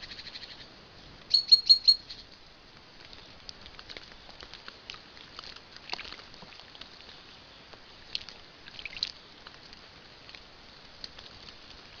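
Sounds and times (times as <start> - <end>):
faint water splashing: 0.0 - 12.0
sparrows chirping: 1.3 - 2.3.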